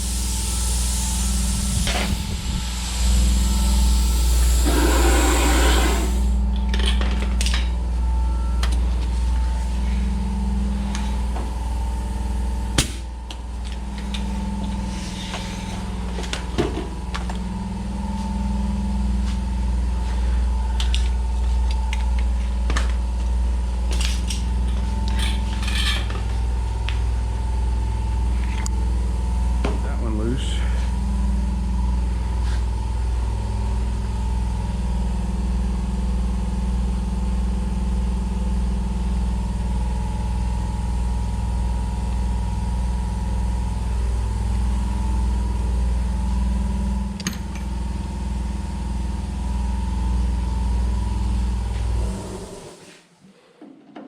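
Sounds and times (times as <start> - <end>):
hiss: 0.0 - 6.4
machine humming: 0.0 - 34.7
short noisy burst: 4.3 - 6.4.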